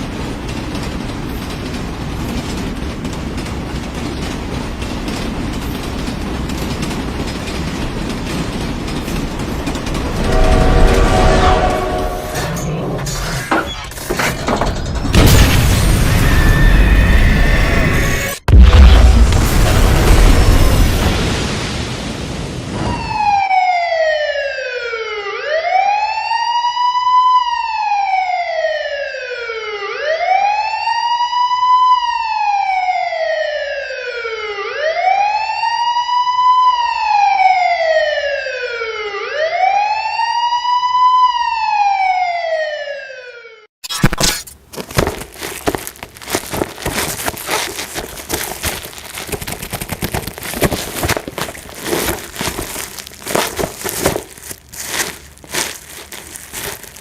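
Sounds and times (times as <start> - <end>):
crackling and clicking: 43.9 - 57.0.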